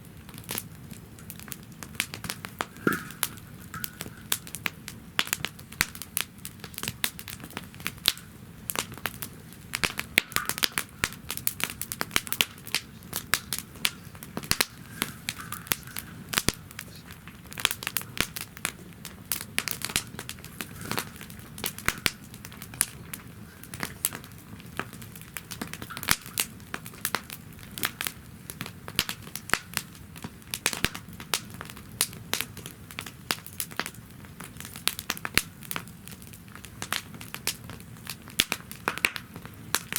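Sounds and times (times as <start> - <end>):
low steady fire hiss: 0.0 - 39.9
wood fire crackling and popping: 0.0 - 39.9.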